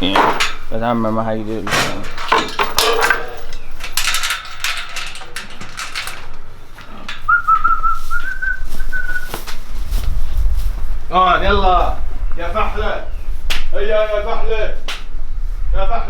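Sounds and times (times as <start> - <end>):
knocks and clatter: 0.0 - 0.9, 1.6 - 7.7
person whistling a held note: 7.3 - 9.4.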